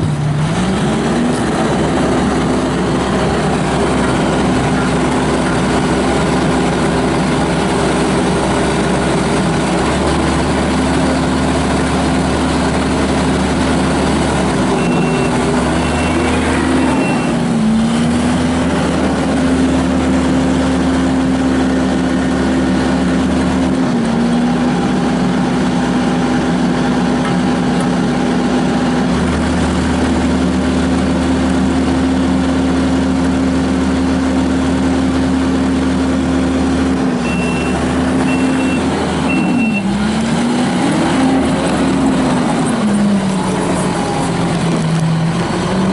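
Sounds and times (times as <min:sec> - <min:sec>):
diesel engine running: 0:00.0 - 0:45.9
short high beeps: 0:14.7 - 0:17.4, 0:37.2 - 0:39.9.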